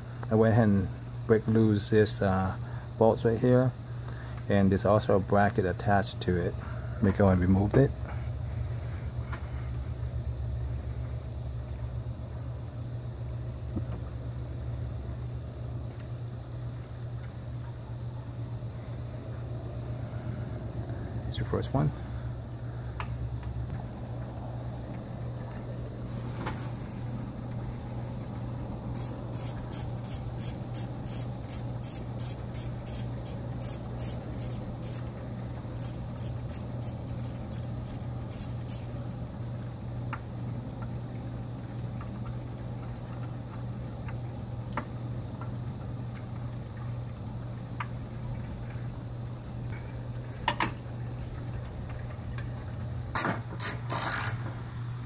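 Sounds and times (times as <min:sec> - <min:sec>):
steady low hum: 0:00.0 - 0:55.0
socket ratchet clicking: 0:29.0 - 0:35.1, 0:35.8 - 0:38.9.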